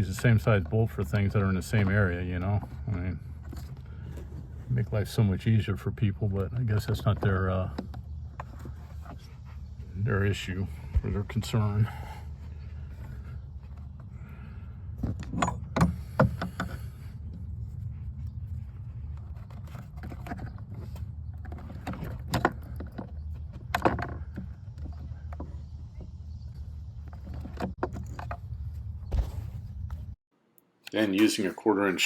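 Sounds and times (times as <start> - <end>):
steady low hum: 0.0 - 30.2
hand tools clicking and knocking: 14.9 - 17.4, 19.2 - 28.4.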